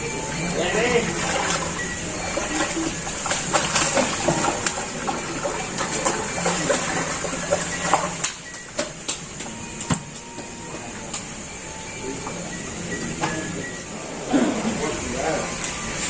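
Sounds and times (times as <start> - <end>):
water splashing and sloshing: 0.8 - 11.2.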